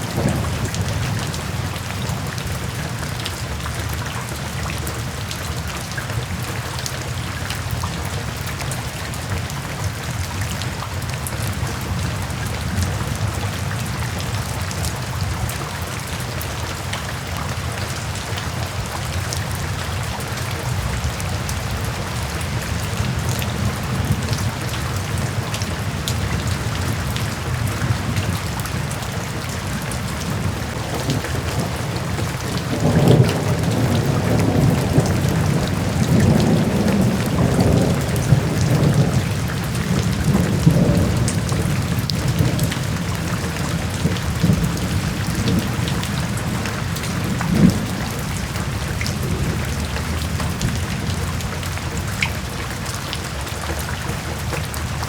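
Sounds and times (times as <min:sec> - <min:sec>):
thunder rumbling: 0:00.0 - 0:03.0, 0:20.2 - 0:52.1
rain falling: 0:00.0 - 0:55.0.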